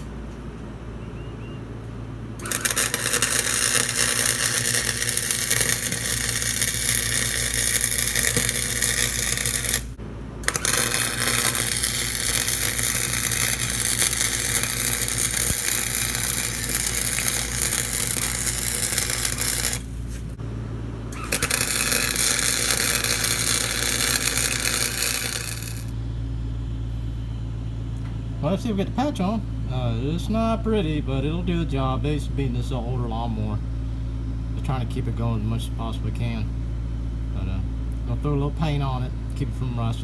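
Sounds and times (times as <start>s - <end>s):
arc welder crackling: 0.0s - 0.2s, 2.4s - 20.4s, 21.1s - 26.0s
welder low hum: 0.0s - 27.5s.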